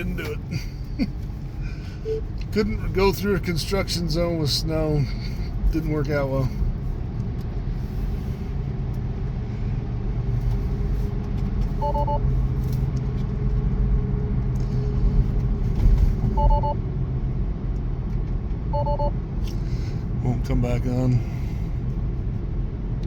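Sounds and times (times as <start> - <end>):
road and tyre rumble in car cabin: 0.0 - 23.0
two-tone car alert chime: 11.8 - 12.2, 16.4 - 16.8, 18.8 - 19.1.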